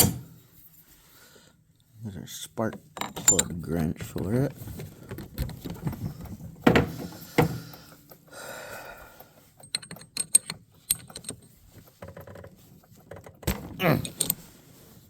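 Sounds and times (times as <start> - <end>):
metal wrench knocking: 2.8 - 3.6, 9.1 - 14.4
small ringing metal clicks: 2.8 - 3.6, 9.1 - 11.6.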